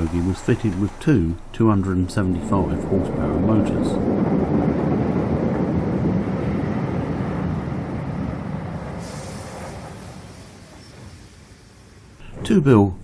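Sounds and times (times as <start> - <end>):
train rumbling along track: 0.0 - 13.0
brief hiss: 9.0 - 12.1.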